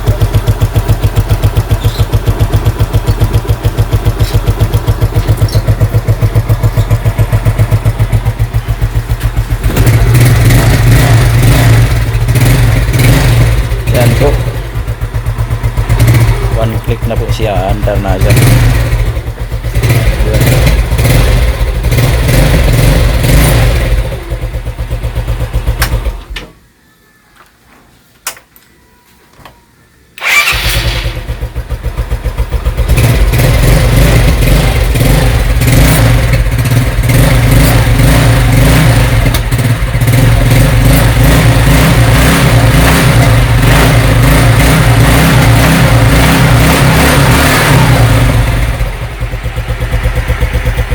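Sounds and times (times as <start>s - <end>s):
scooter engine idling: 0.0s - 26.4s, 30.2s - 50.9s
electric starter: 30.2s - 31.4s.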